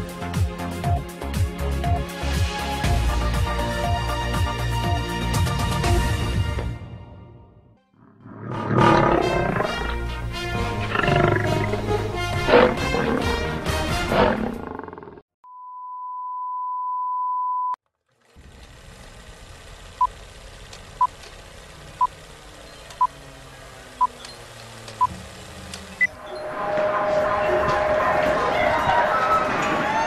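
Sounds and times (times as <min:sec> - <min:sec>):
dramatic music: 0:08.5 - 0:14.7, 0:26.1 - 0:30.0.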